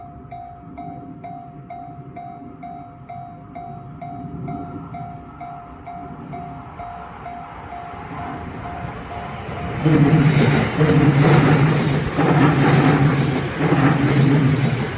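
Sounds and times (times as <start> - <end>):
train rumble: 0.0 - 14.9.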